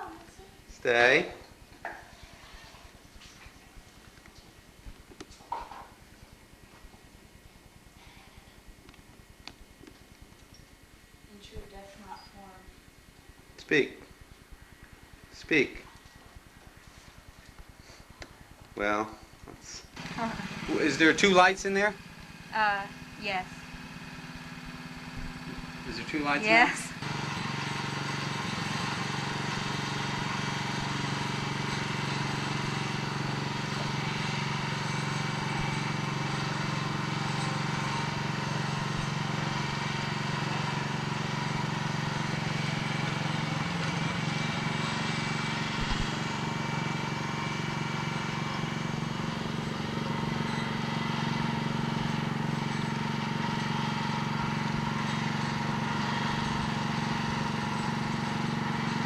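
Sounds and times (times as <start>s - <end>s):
small engine running: 15.0s - 59.0s.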